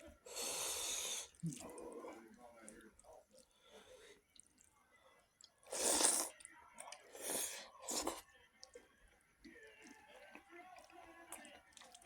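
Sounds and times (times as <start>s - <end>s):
close chewing: 9.4s - 12.0s.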